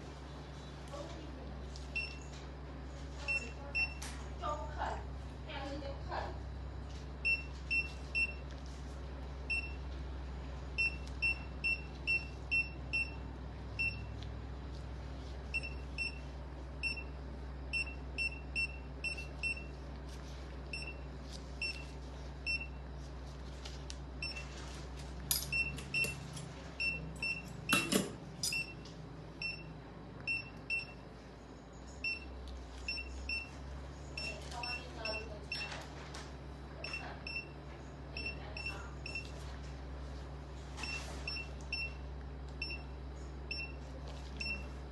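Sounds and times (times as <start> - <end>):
low equipment hum: 0.0 - 44.9
patient monitor beeping: 1.8 - 2.4, 3.2 - 4.1, 7.2 - 8.6, 9.4 - 9.9, 10.7 - 14.2, 15.4 - 20.0, 20.6 - 23.0, 24.2 - 24.6, 25.5 - 35.8, 36.8 - 39.5, 40.8 - 44.9.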